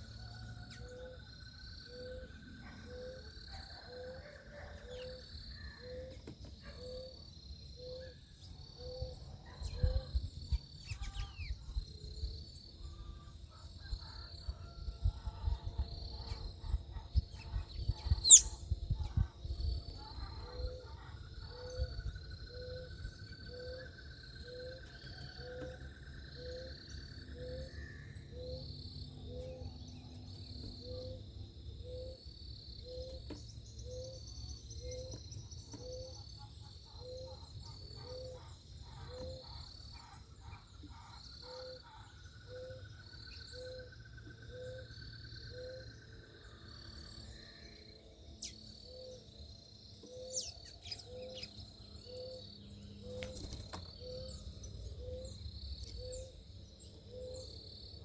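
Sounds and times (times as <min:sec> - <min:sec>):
bird trills and chirps: 0:01.8 - 0:11.8, 0:16.2 - 0:31.2, 0:50.0 - 0:57.6.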